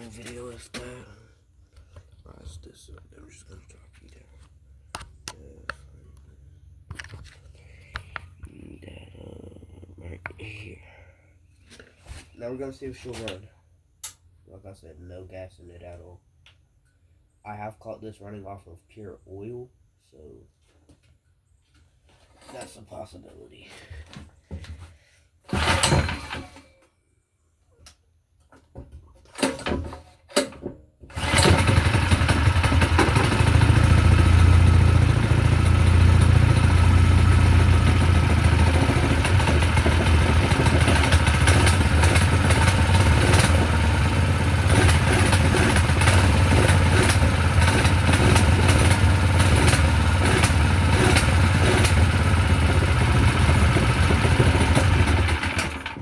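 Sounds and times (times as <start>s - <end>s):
small engine pull-starting and running: 25.5s - 26.8s, 29.4s - 56.0s.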